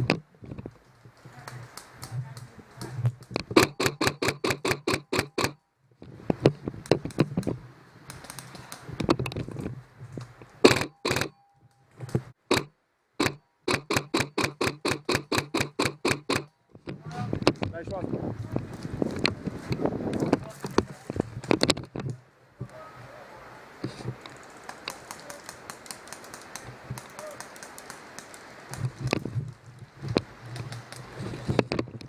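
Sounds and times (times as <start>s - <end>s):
airsoft guns firing: 3.6s - 5.6s.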